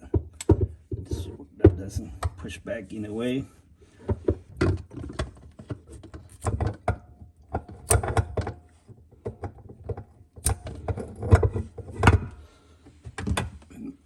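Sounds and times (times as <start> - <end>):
tools and parts knocking and clunking: 0.0 - 2.5, 3.9 - 13.7.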